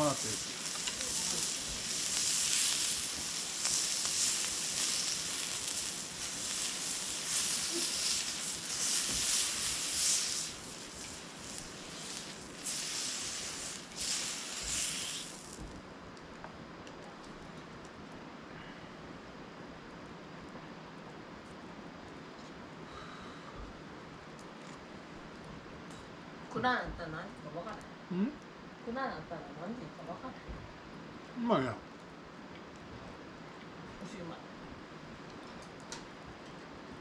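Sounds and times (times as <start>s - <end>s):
beef sizzling on a griddle: 0.0s - 15.8s.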